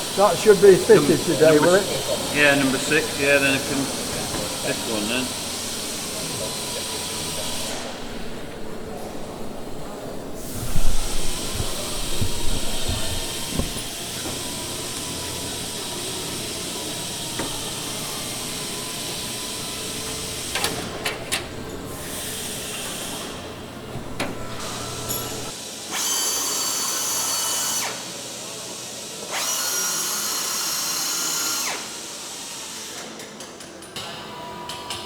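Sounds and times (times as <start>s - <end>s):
compressed air hissing: 0.0s - 25.7s
air drill running: 0.0s - 33.2s.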